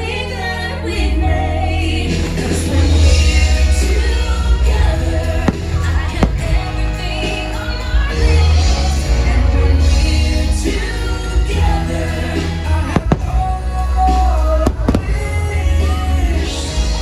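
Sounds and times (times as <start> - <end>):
christmas music with singing: 0.0 - 17.0
firework bangs: 4.8 - 7.6, 12.6 - 15.6.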